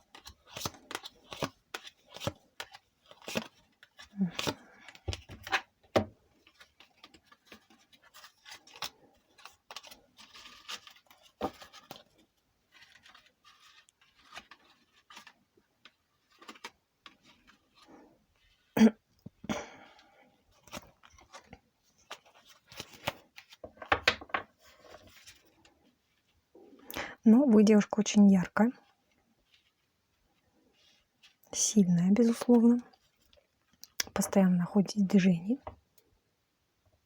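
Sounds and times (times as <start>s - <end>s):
cards shuffling and rustling: 0.0s - 18.7s, 19.3s - 26.2s.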